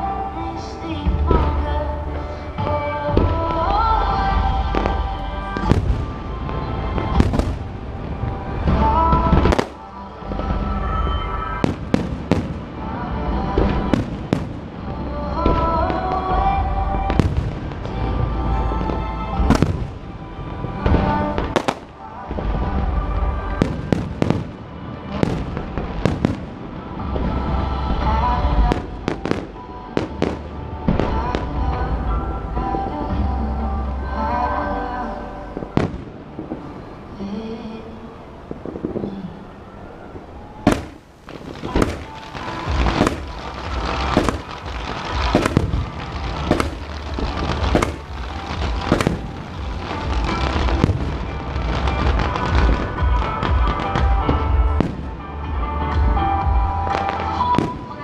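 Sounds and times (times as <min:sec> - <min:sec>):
fireworks bangs and cracks: 0:01.0 - 0:33.1, 0:35.6 - 0:37.2, 0:38.4 - 0:58.0
loud music with bass beat: 0:42.4 - 0:57.6.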